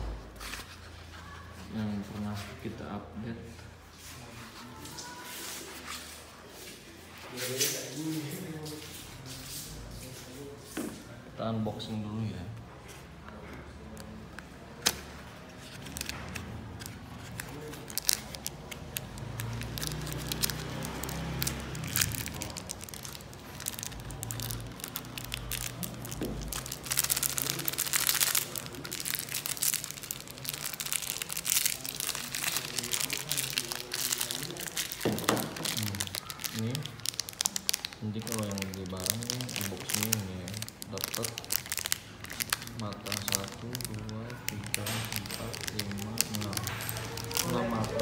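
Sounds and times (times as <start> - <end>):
packaging crinkling and rustling: 13.7 - 48.0.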